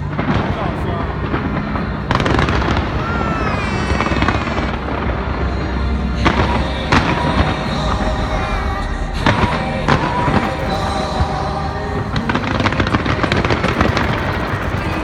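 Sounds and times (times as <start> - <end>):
fireworks rumbling and crackling: 0.0 - 15.0.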